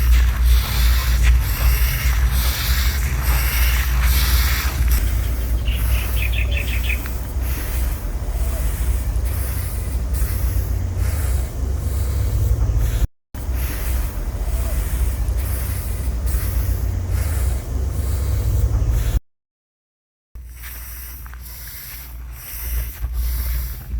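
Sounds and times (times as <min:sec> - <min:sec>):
bird chirping trill: 0:00.0 - 0:12.8
rice grains swishing: 0:00.0 - 0:18.5, 0:20.4 - 0:23.9
steady low rumble: 0:00.0 - 0:19.2, 0:20.4 - 0:23.9.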